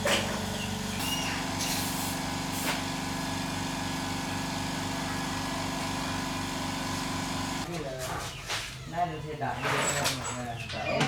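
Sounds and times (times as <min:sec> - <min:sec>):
small engine running: 0:00.0 - 0:07.7.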